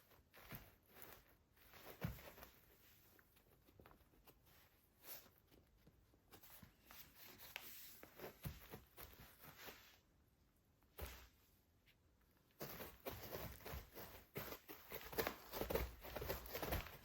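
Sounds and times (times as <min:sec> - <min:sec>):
faint clicks and rustles: 0:00.0 - 0:17.0.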